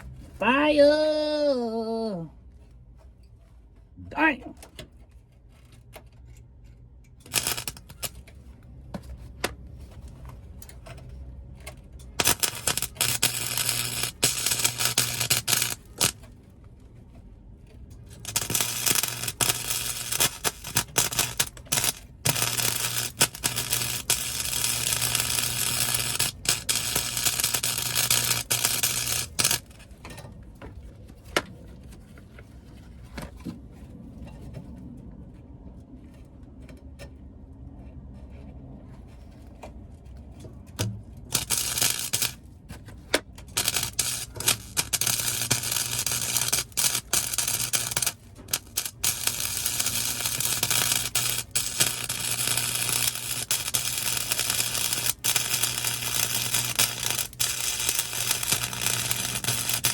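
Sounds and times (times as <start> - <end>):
welding arc crackling and sizzling: 7.2 - 8.4, 12.0 - 16.3, 18.1 - 29.9, 41.3 - 42.4, 43.4 - 59.9.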